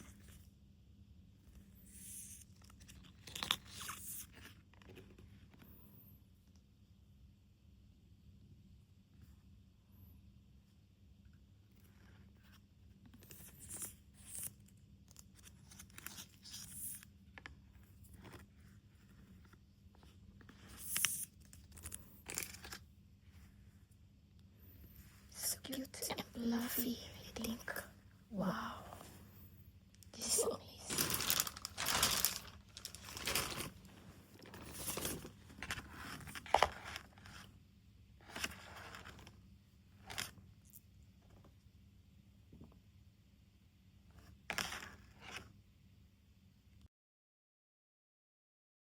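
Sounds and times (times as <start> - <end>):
packaging crinkling and ripping: 2.7 - 4.6, 30.2 - 37.4.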